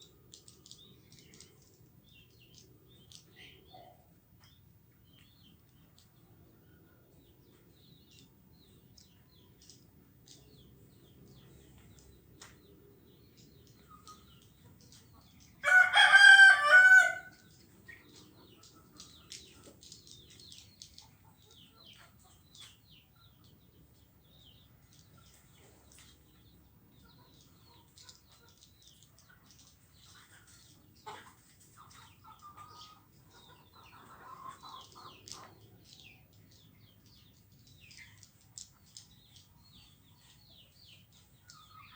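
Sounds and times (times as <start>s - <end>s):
faint high bird chirps: 0.0s - 10.5s
rooster crowing: 15.6s - 17.3s.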